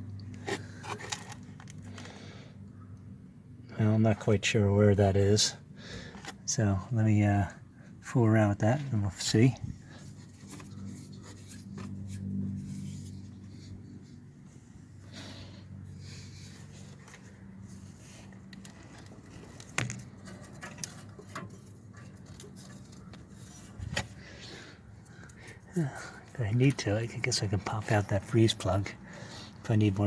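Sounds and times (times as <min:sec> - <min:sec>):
faint clicks of handling parts: 0:00.0 - 0:02.2, 0:06.0 - 0:06.6, 0:08.7 - 0:30.0
steady low hum: 0:00.0 - 0:30.0.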